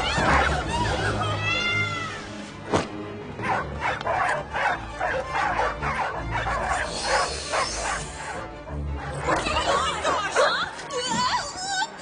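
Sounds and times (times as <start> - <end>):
dogs barking and yipping: 0.0 - 1.2, 3.4 - 10.8
background music: 0.0 - 12.0.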